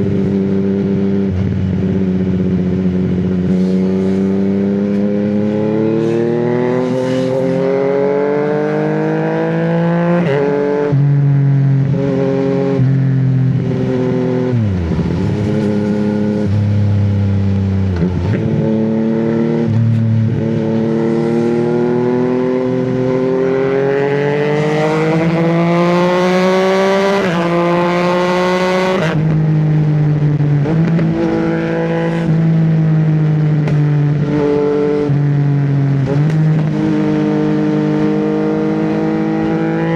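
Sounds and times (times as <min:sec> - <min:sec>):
motorcycle engine accelerating: 0:00.0 - 0:39.9.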